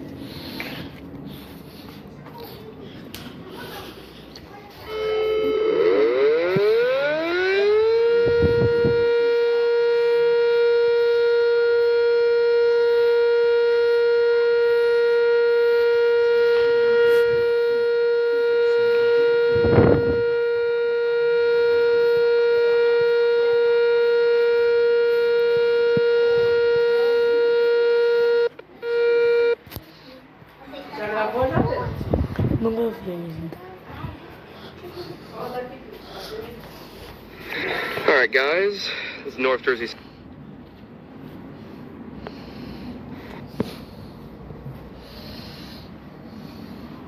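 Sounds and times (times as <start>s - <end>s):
tornado warning siren: 4.8s - 29.6s.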